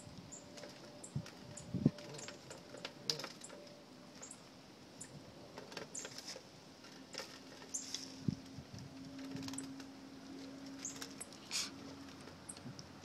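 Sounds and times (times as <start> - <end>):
hands handling a bird feeder: 5.5 - 12.8.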